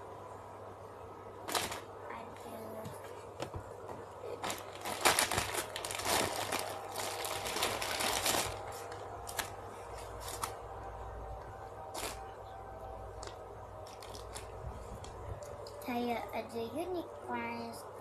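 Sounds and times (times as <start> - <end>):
rustling of packaging: 1.4 - 10.7, 11.9 - 12.4, 13.2 - 15.4.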